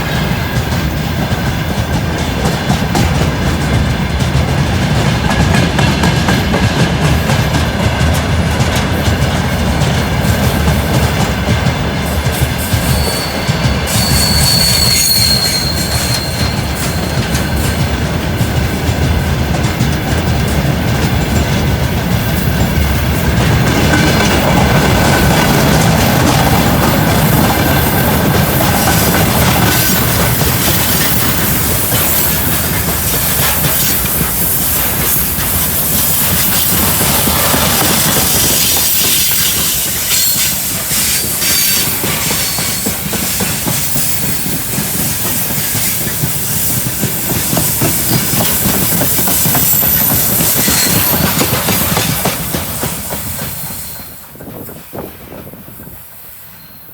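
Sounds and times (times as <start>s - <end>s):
train wheels rumbling on rails: 0.0s - 56.9s
high squealing of wheels: 12.6s - 18.0s, 27.0s - 54.2s.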